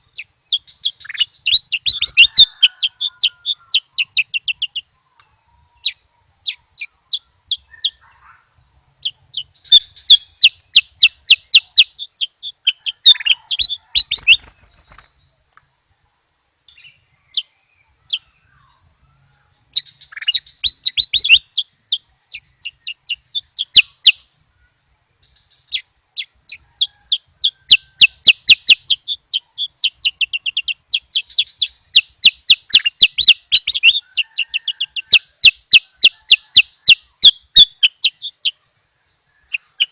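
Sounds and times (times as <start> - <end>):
bird chirping: 0.0 - 39.9
faint high hiss: 0.0 - 39.9.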